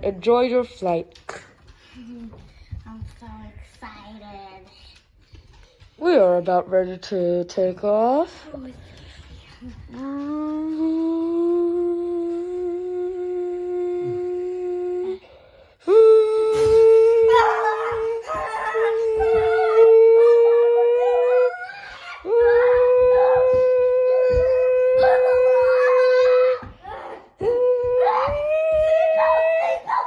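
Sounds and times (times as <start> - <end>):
rustling and knocking: 0.0 - 11.2.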